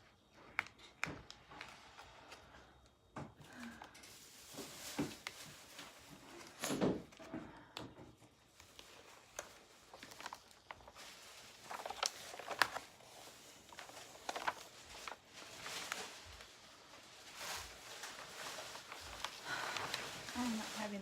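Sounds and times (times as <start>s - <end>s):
paper rustling and tearing: 8.6s - 21.0s.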